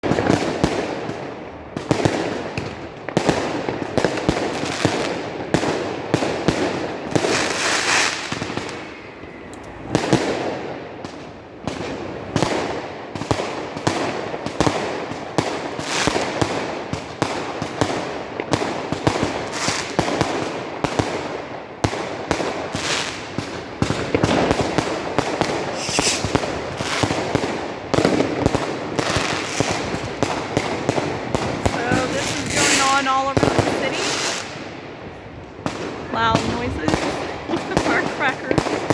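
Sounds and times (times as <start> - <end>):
fireworks bangs and crackles: 0.0 - 38.9
hissing firework burst: 23.9 - 30.4.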